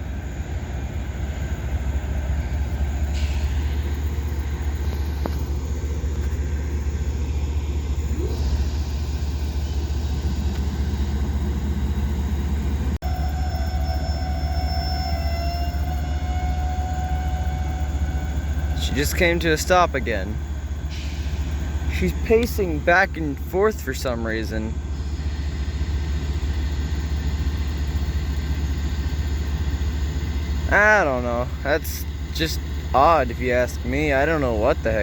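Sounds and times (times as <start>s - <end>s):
freight train rumbling: 0.0s - 35.0s
high metallic wheel squeal: 13.1s - 19.0s.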